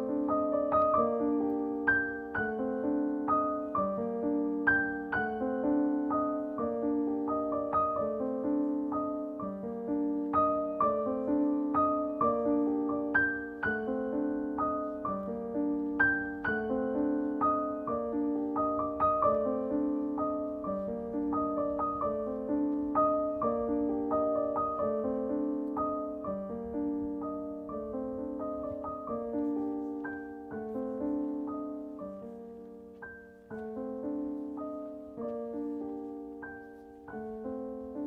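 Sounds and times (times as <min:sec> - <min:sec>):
soft piano music: 0:00.0 - 0:38.0.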